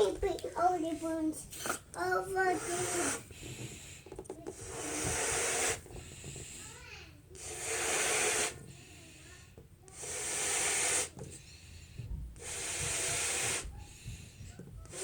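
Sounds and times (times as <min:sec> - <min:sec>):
balloon inflating hiss: 0:01.1 - 0:15.0.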